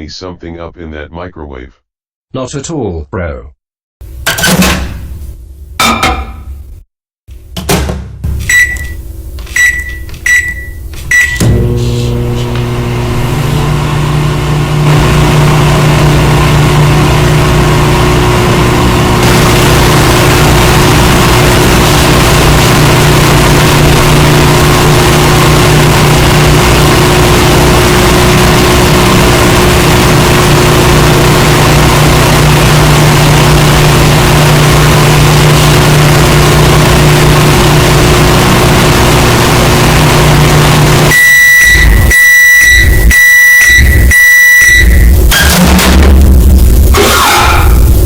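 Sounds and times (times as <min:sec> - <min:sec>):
microwave oven humming: 0:08.2 - 0:45.3
high microwave beeps: 0:08.4 - 0:11.9, 0:41.1 - 0:45.5.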